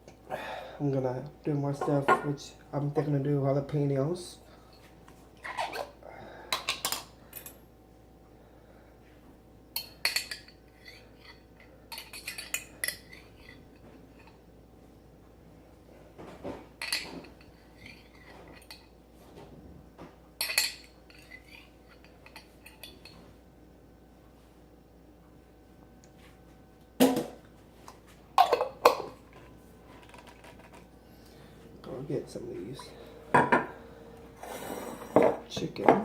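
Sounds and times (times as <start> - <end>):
utensils and dishes clinking: 20.4 - 23.2.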